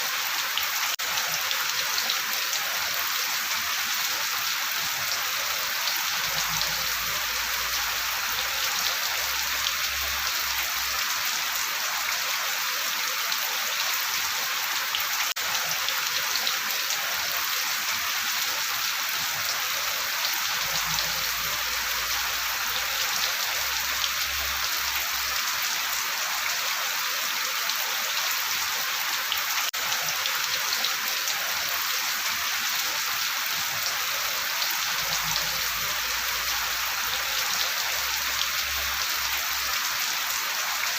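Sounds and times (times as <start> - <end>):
steady rain: 0.0 - 40.9.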